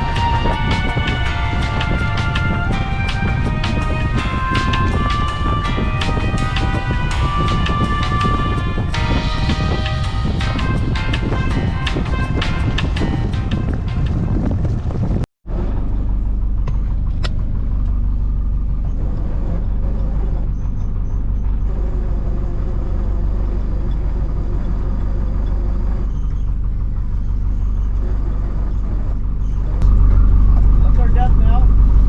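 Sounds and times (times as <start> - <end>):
background music: 0.0 - 14.5
boat engine running: 0.0 - 32.0.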